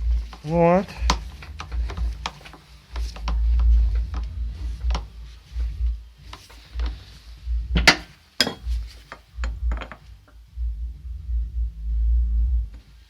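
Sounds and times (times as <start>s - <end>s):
sharp metal strikes: 7.8s - 8.8s.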